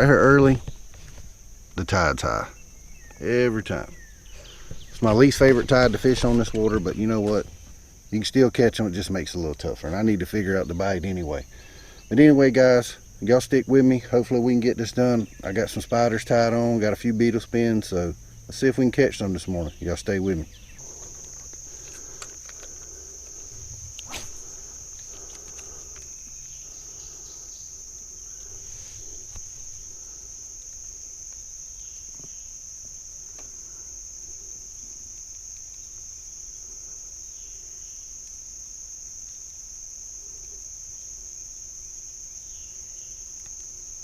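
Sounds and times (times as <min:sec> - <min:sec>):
high-pitched insect drone: 0:01.4 - 0:44.0.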